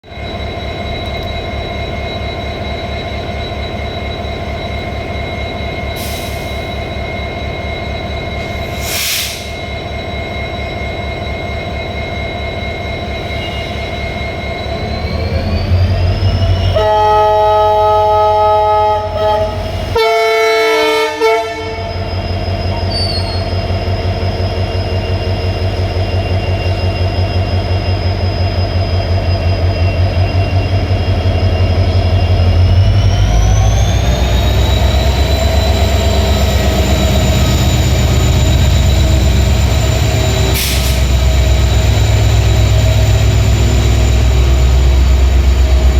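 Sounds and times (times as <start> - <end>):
diesel locomotive engine throbbing: 0.0 - 45.9
train horn blasts: 16.6 - 22.0.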